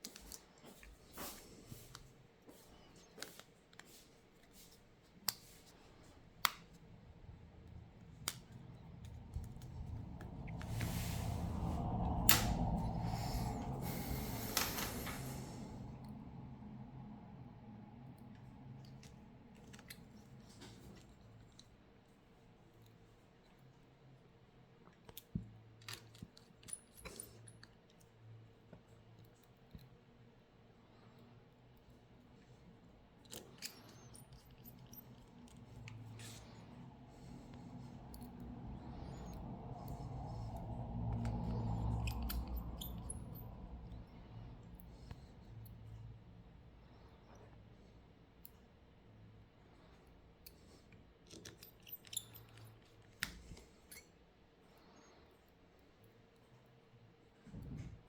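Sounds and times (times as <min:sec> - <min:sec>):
low hum: 0:06.8 - 0:21.2, 0:34.1 - 0:47.8
small tools clicking and tapping: 0:33.2 - 0:36.6, 0:38.1 - 0:44.0, 0:51.2 - 0:54.1.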